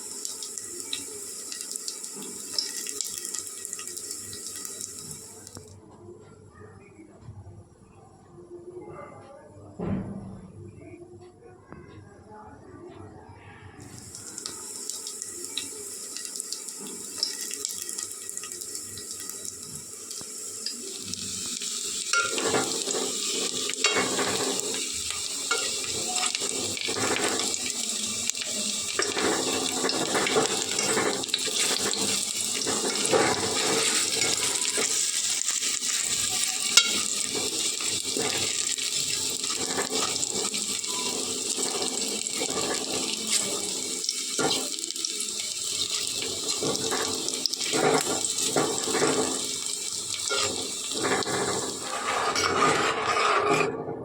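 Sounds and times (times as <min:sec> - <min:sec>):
water running from tap: 0:00.0 - 0:05.7, 0:13.8 - 0:52.4
small knocks and clatter: 0:29.0 - 0:35.1, 0:45.9 - 0:54.0.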